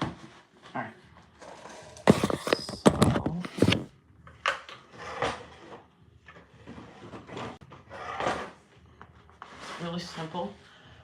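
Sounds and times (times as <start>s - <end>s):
objects scraping and rustling: 0.0s - 3.9s, 4.8s - 10.6s
objects knocking and clattering: 1.5s - 5.4s.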